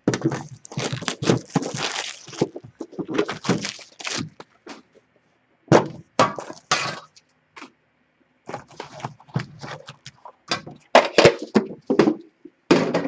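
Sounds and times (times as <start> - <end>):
foil packs crinkling: 0.1 - 4.5, 8.5 - 10.1.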